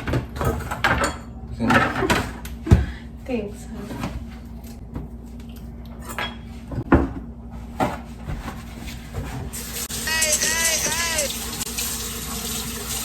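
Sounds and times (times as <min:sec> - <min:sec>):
dishes and utensils clinking: 0:06.0 - 0:07.2.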